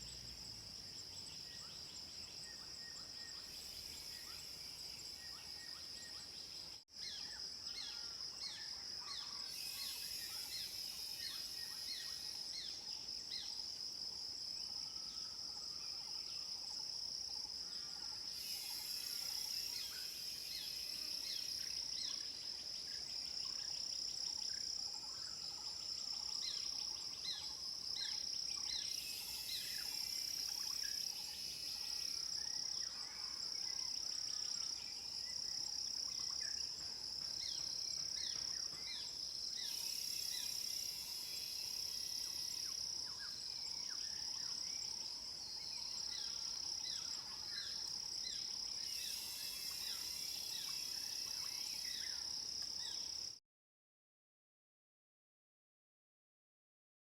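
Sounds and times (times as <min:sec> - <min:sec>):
cicadas and crickets droning: 0:00.0 - 0:53.4
hissing cicada burst: 0:39.6 - 0:42.8, 0:48.8 - 0:52.2.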